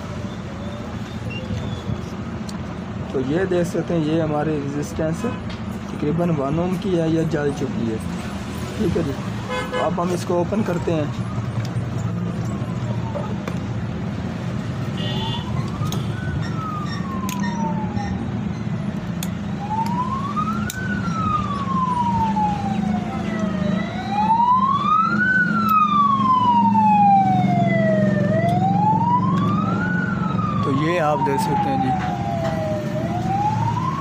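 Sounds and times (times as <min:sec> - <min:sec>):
siren wailing: 0:09.5 - 0:14.1, 0:14.8 - 0:34.0.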